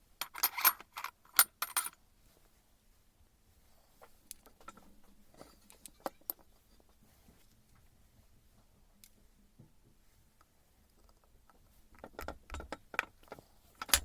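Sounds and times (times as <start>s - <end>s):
metal parts clinking: 0.2s - 2.0s.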